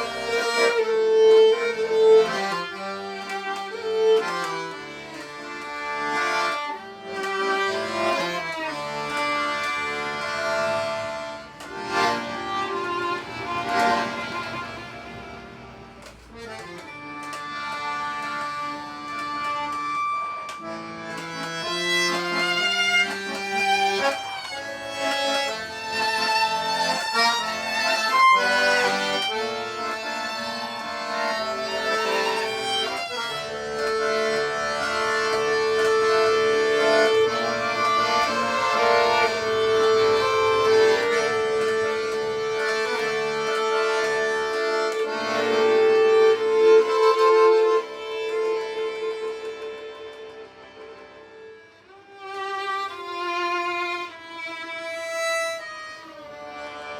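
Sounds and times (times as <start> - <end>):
accordion: 0.0 - 56.9
violin: 0.0 - 56.9.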